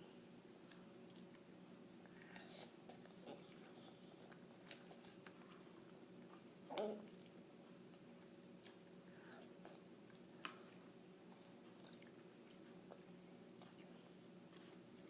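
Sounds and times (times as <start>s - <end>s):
steady low hum: 0.0s - 15.0s
person chewing noodles: 2.0s - 6.0s, 11.3s - 14.1s.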